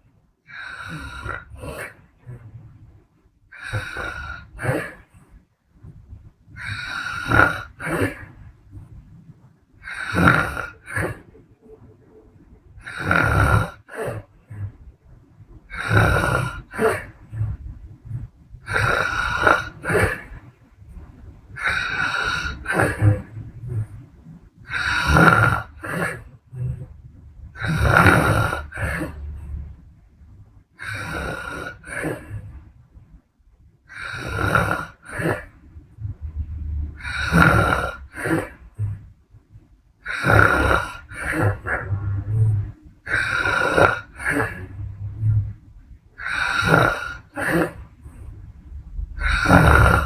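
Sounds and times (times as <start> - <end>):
woman snoring: 0.5 - 2.0, 3.6 - 5.1, 6.6 - 8.4, 9.8 - 11.4, 12.8 - 14.7, 15.7 - 17.6, 18.6 - 20.4, 21.6 - 23.9, 24.6 - 26.9, 27.6 - 29.5, 30.8 - 32.5, 33.9 - 35.5, 36.9 - 39.0, 40.0 - 45.6, 46.2 - 47.9, 49.1 - 50.0.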